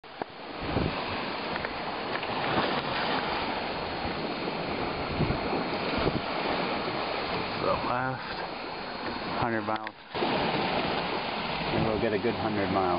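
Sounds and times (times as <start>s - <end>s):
water rushing: 0.0s - 12.9s
wind rushing: 3.2s - 7.9s.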